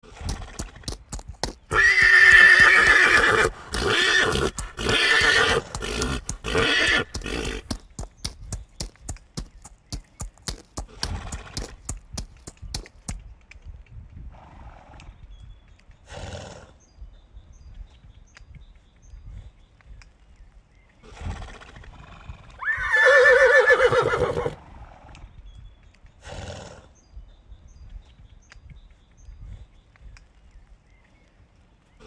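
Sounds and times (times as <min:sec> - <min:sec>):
horse breathy sounds: 0:00.2 - 0:13.2, 0:22.8 - 0:24.6
horse whinnying: 0:00.3 - 0:08.4, 0:22.6 - 0:24.6.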